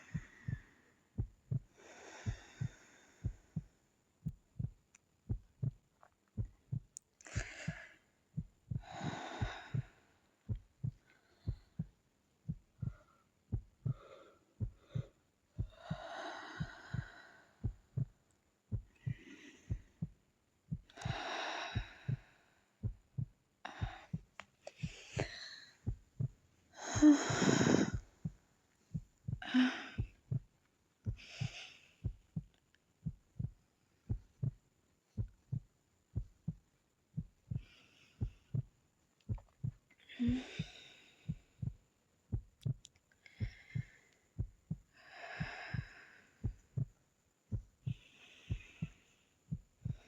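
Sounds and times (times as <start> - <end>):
woman breathing softly in sleep: 0.0 - 3.7, 7.2 - 8.1, 8.7 - 11.9, 12.8 - 18.1, 18.7 - 20.1, 20.8 - 23.0, 23.6 - 26.0, 26.7 - 30.4, 31.1 - 32.4, 37.5 - 38.7, 40.0 - 41.8, 43.2 - 46.9, 47.5 - 50.0
low thudding heartbeat: 0.0 - 50.0.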